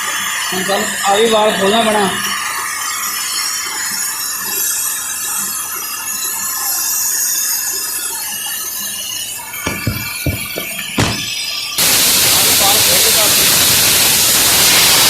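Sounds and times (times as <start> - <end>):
gas hissing from valve: 9.7 - 15.0.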